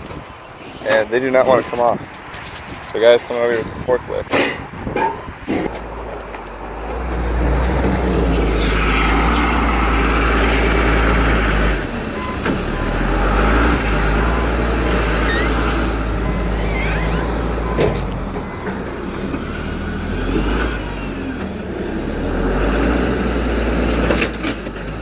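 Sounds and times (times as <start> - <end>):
forklift engine running: 4.4 - 25.0
short high squeaks: 14.2 - 18.8.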